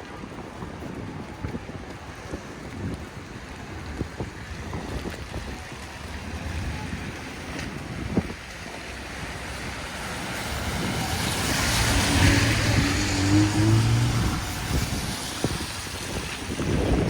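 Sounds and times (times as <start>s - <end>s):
vehicle passing by: 9.2s - 17.0s.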